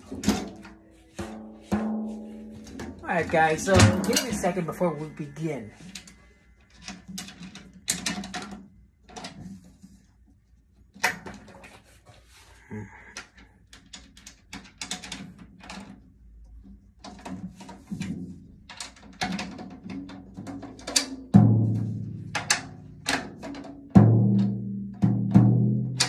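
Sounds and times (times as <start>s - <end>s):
objects knocking and clattering: 0.0s - 10.2s, 12.8s - 26.0s.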